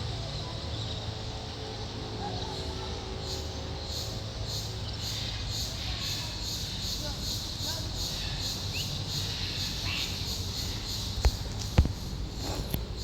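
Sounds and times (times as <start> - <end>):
faint murmur of voices: 0.0 - 3.9.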